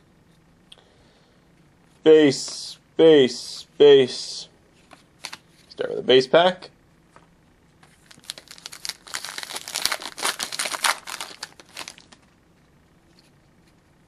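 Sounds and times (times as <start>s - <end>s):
wrapper tearing and crinkling: 8.0s - 12.2s.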